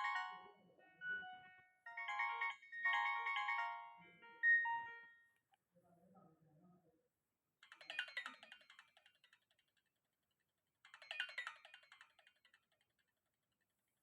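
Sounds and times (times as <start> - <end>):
mobile phone ringtone beeping: 0.0 - 5.2.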